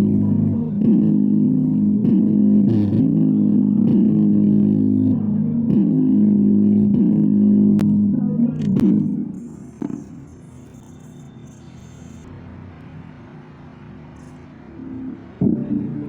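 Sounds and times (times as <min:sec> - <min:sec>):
bass-heavy guitar and bass music: 0:00.0 - 0:10.3.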